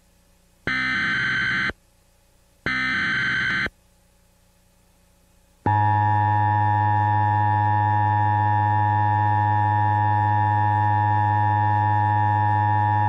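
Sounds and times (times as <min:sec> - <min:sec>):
harsh two-tone alert buzz: 0:00.7 - 0:01.7, 0:02.7 - 0:03.7, 0:05.7 - 0:13.0.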